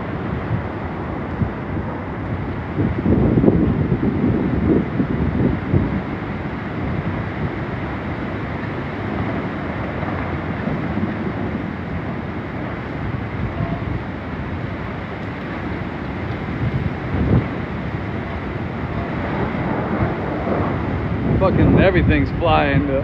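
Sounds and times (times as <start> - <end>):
strong wind blowing: 0.0 - 23.0
wind buffeting microphone: 0.0 - 23.0.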